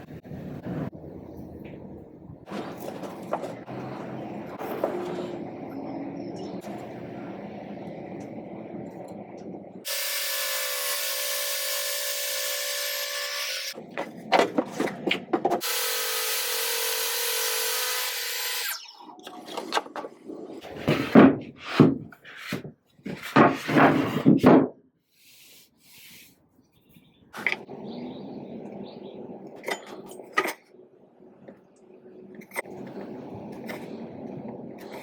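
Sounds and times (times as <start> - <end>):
power tool running: 9.9 - 13.8, 15.6 - 18.8.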